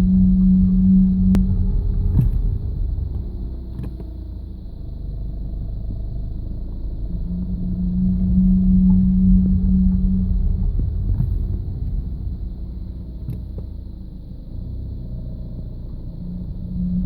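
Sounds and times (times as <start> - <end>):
low groaning hum from car: 0.0 - 17.0
low rumble: 0.0 - 17.0.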